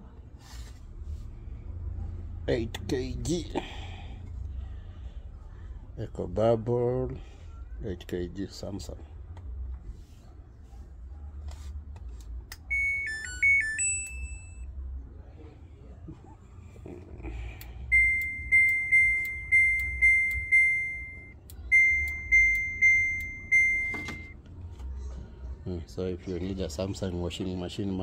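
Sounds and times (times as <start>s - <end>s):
single electronic beeps: 17.9s - 24.4s.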